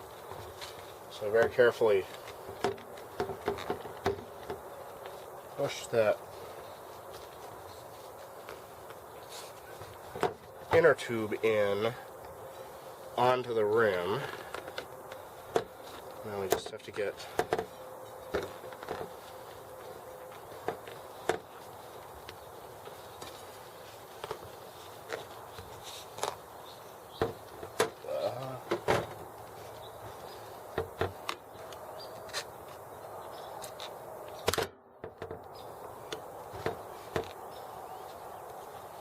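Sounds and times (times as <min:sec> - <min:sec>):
bicycle tire clicks and knocks: 0:01.4 - 0:04.7, 0:14.4 - 0:19.2, 0:30.7 - 0:32.5, 0:34.3 - 0:37.4.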